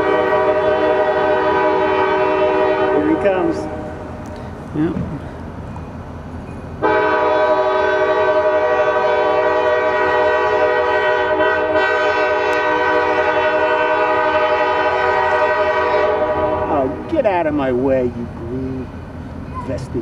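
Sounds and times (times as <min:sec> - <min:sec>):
locomotive air horn chord: 0:00.0 - 0:04.1, 0:06.8 - 0:17.1.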